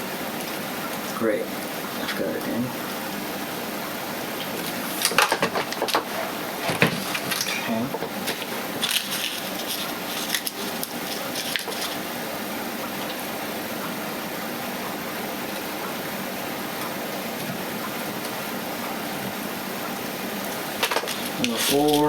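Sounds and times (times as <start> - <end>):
steady hiss: 17.6 - 22.0.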